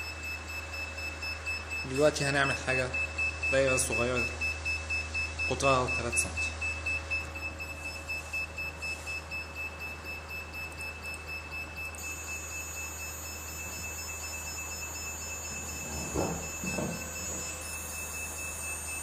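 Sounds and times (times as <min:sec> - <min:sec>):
stepper motor whine: 0:06.6 - 0:19.0.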